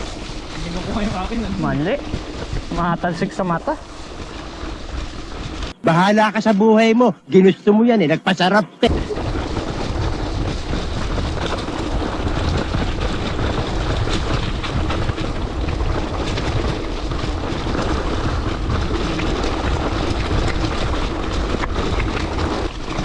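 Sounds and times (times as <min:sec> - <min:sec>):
bike rattling over dirt trail: 0:00.0 - 0:05.8, 0:08.9 - 0:23.0
wind on microphone: 0:00.0 - 0:05.8, 0:08.8 - 0:23.0.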